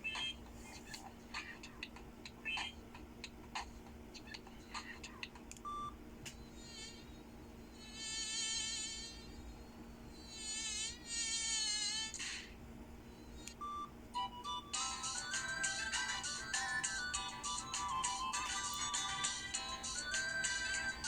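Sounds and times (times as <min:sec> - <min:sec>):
stepping ringtone melody: 0:14.2 - 0:21.0
buzzy phone alert tone: 0:14.3 - 0:21.0.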